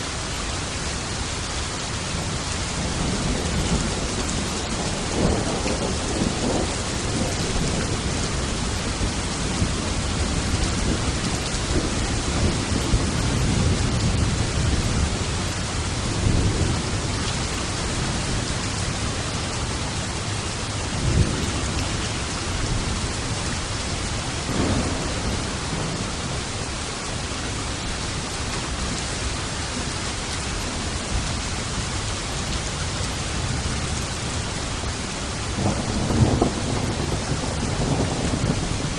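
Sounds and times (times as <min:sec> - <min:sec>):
heavy rain: 0:00.0 - 0:38.9
thunder rumbling: 0:02.1 - 0:31.4, 0:33.2 - 0:38.9
sharp thunderclap: 0:24.5 - 0:26.4, 0:35.6 - 0:38.9.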